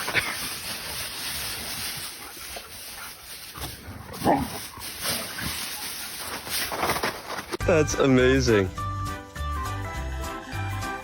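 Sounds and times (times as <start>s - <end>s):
background noise: 0.0s - 8.7s.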